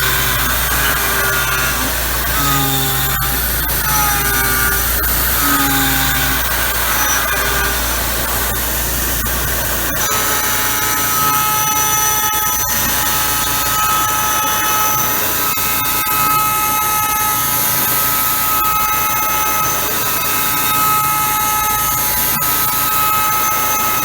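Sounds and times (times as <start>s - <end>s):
metal cutting noise: 0.0s - 24.0s
milling machine spindle whine: 0.0s - 24.0s.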